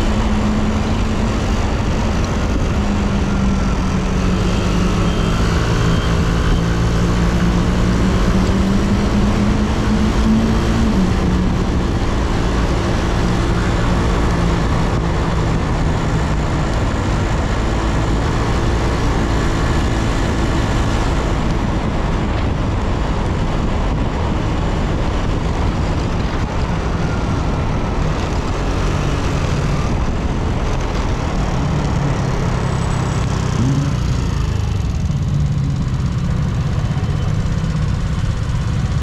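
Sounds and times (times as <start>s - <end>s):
wind and road noise: 0.0s - 39.0s
scooter engine running: 33.4s - 39.0s.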